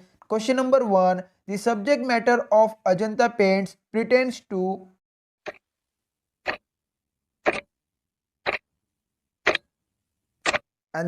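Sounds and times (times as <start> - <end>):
clock ticking: 5.4 - 5.7, 6.4 - 6.7, 7.4 - 7.7, 8.4 - 8.7, 9.4 - 9.8, 10.4 - 10.7.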